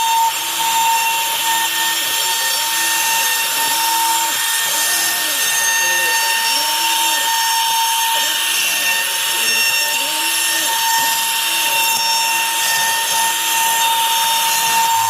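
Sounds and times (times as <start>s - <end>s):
cnc router spindle whine: 0.0s - 15.0s
lower machine tones: 9.5s - 15.0s.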